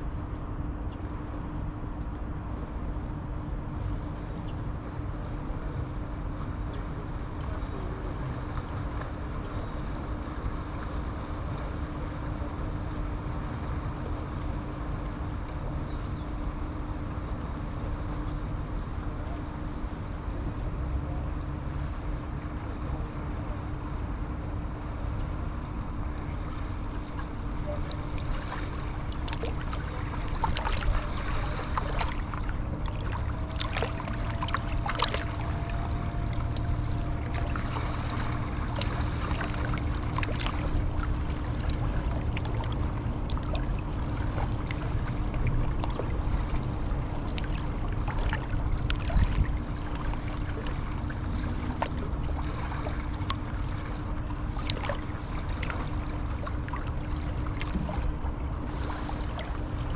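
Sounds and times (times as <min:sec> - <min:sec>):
faint hum: 0:00.0 - 0:59.9
low rumble: 0:25.0 - 0:59.9.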